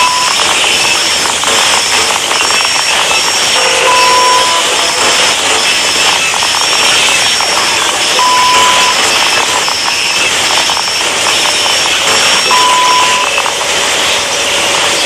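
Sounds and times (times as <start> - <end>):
short high beeps: 0.0 - 0.4, 3.5 - 5.4, 8.1 - 10.2, 12.4 - 13.5
held mid-pitched tone: 3.5 - 5.6.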